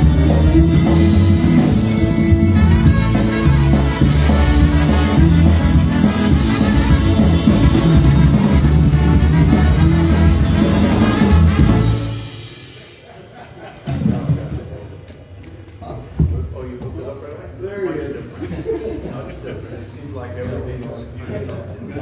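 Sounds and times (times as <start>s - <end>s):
polka band with brass and drums: 0.0s - 13.0s.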